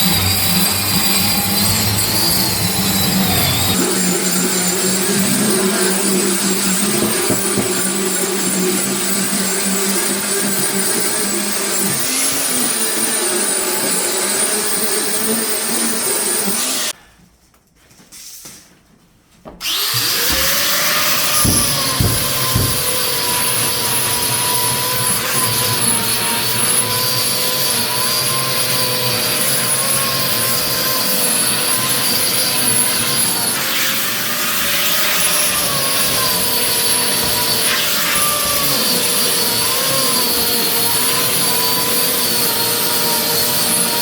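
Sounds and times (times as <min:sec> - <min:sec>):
electric sander on wood floor: 0:00.0 - 0:16.9, 0:19.6 - 0:44.0
low knocks: 0:20.2 - 0:24.3.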